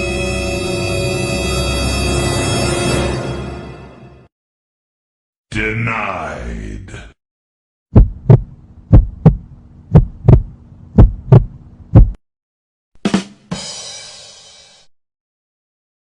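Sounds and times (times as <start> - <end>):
heartbeat thumps: 7.9 - 12.2
low steady hum: 8.0 - 12.2.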